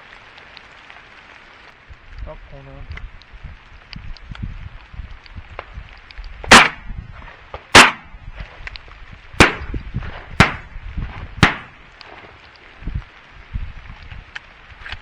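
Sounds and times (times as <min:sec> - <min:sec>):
shotgun shots: 0:06.5 - 0:06.9, 0:07.7 - 0:08.1, 0:09.4 - 0:09.7, 0:10.4 - 0:10.7, 0:11.4 - 0:11.8.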